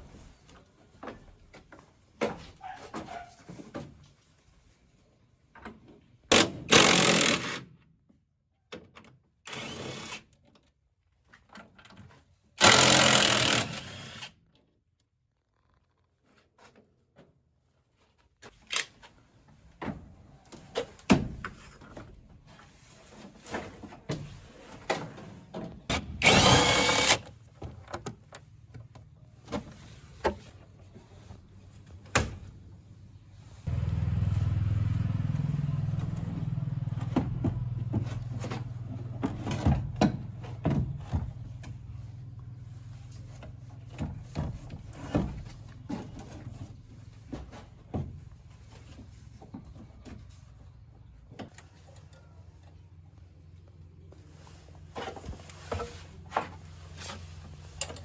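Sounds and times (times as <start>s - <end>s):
power tool burst: 12.6s - 14.2s, 25.9s - 27.2s.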